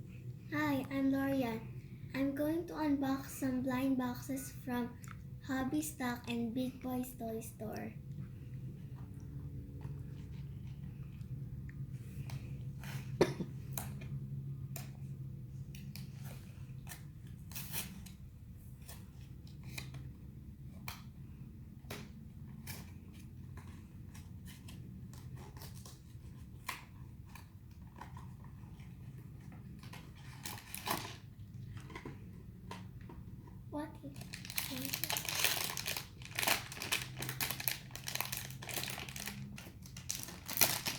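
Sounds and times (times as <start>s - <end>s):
steady low hum: 0.0s - 30.2s
packaging clicks and rustles: 22.6s - 33.3s, 34.1s - 40.9s.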